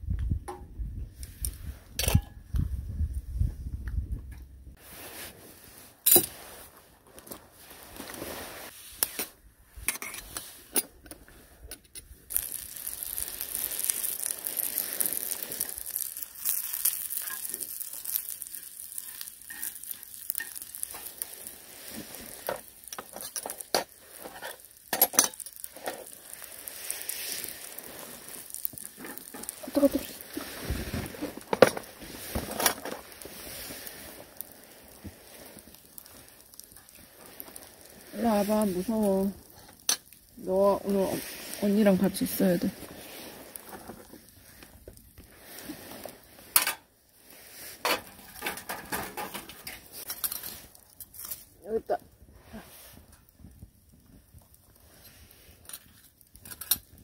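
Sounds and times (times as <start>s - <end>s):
food sizzling in a pan: 12.2s - 57.0s.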